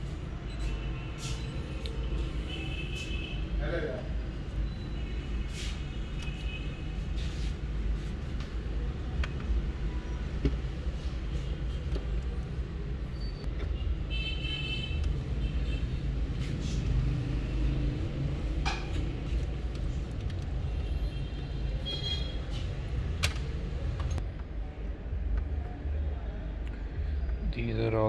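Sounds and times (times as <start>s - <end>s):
motor vehicles rumbling: 0.0s - 27.4s
clicks: 18.5s - 24.2s.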